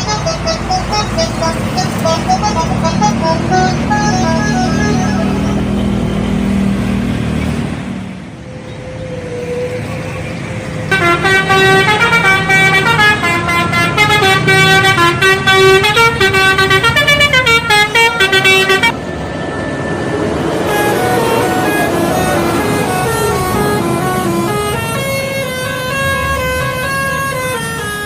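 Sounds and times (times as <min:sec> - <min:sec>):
bus horn playing a tune: 0:00.0 - 0:06.3, 0:10.9 - 0:19.0, 0:20.6 - 0:28.0
bus engine running low: 0:00.0 - 0:28.0.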